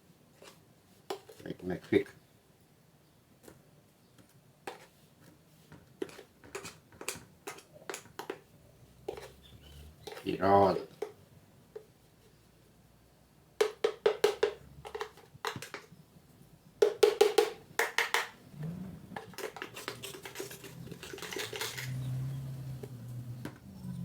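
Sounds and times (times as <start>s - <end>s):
utensil clacking against bowl: 6.0s - 8.4s, 9.1s - 9.4s, 10.0s - 11.2s, 13.6s - 15.9s, 16.8s - 24.0s.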